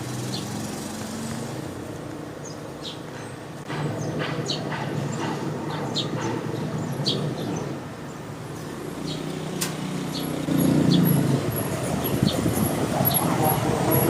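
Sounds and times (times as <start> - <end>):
sharp click: 9.6 - 9.8.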